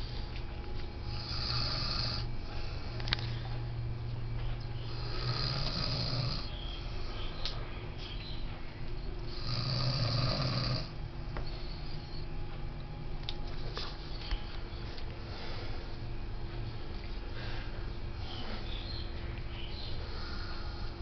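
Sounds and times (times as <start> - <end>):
man snoring heavily: 1.1 - 2.3, 4.9 - 6.5, 9.3 - 11.0.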